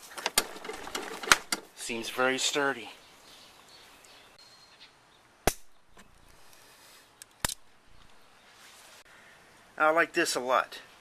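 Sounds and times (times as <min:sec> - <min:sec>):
sharp clicks: 0:07.2 - 0:08.2.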